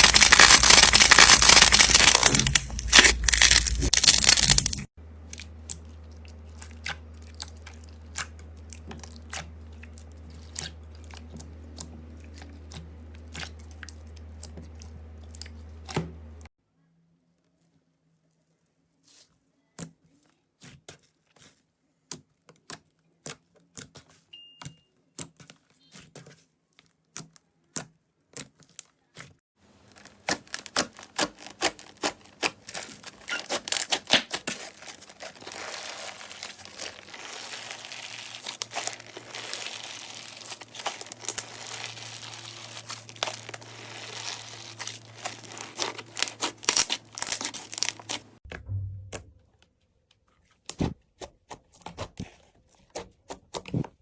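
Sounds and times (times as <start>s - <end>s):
slime clicking and popping: 0.0s - 4.8s, 44.2s - 48.2s
slime crackling: 0.0s - 4.9s, 29.8s - 48.4s.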